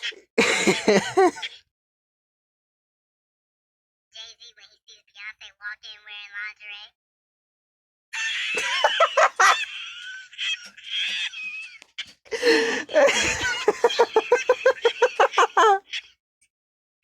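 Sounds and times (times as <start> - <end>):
high-pitched laughter: 0.4 - 1.6, 8.2 - 16.2.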